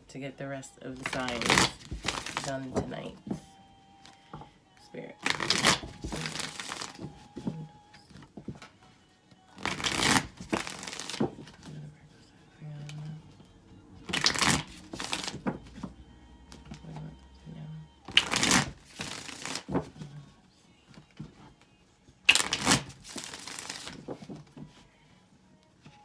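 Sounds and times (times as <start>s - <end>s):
cards being shuffled: 1.0s - 4.2s, 5.2s - 7.7s, 9.6s - 11.8s, 14.1s - 15.9s, 18.1s - 20.3s, 22.3s - 24.8s.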